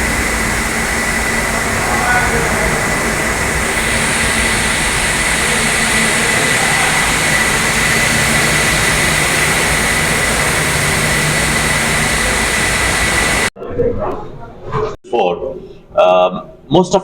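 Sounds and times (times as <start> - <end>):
machine running with whine: 0.0 - 13.5.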